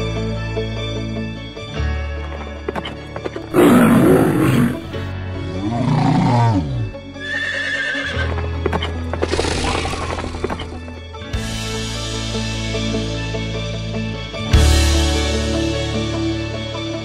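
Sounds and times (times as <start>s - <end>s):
background music: 0.0s - 17.0s
animal calls: 3.6s - 5.0s.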